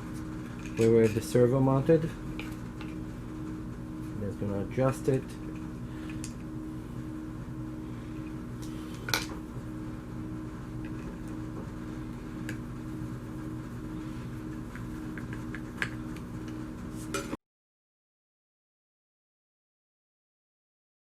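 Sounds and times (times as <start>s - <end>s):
steady low hum: 0.0s - 17.4s.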